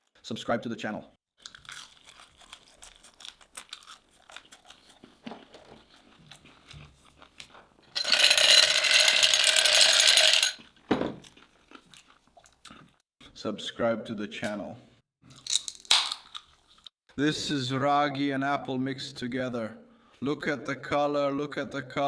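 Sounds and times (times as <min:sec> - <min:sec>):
crunching of eating: 0:01.4 - 0:07.9, 0:10.6 - 0:13.0.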